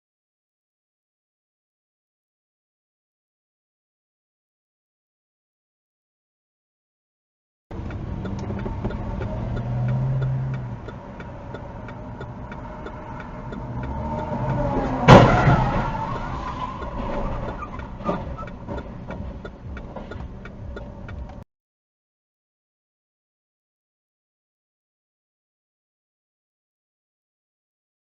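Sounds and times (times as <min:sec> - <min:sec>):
steady ticking: 0:07.7 - 0:21.4
car road noise: 0:07.7 - 0:21.5
loud crash of impact: 0:15.0 - 0:16.0.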